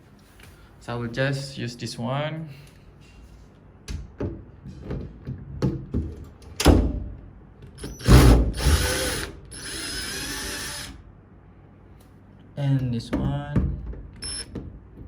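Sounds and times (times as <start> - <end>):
tool motor whirring: 7.8 - 11.0.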